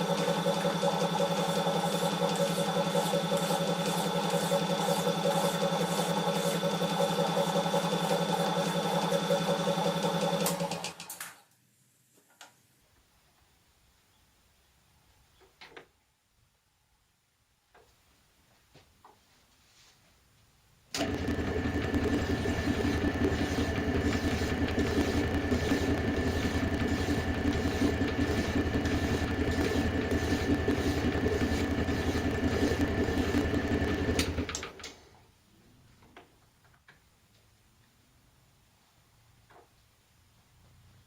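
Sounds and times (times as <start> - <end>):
power tool motor whining: 21.0 - 34.7.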